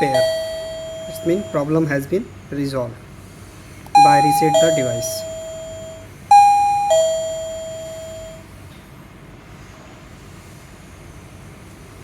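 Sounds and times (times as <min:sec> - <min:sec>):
doorbell ding-dong chime: 0:00.0 - 0:01.9, 0:04.0 - 0:08.4.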